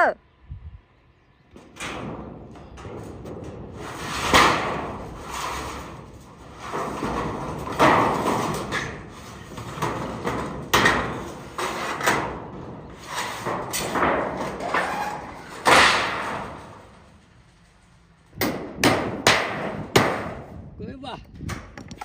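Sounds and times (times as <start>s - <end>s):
rustling scraping swishes: 2.6s - 18.2s
sharp knocks: 18.4s - 20.5s.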